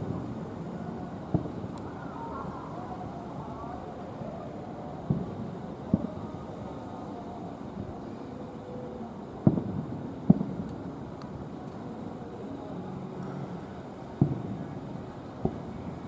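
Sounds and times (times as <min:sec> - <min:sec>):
outdoor background hum: 0:00.0 - 0:16.0
fireworks booming: 0:01.2 - 0:01.8, 0:05.0 - 0:06.2, 0:09.4 - 0:11.5, 0:14.1 - 0:16.0.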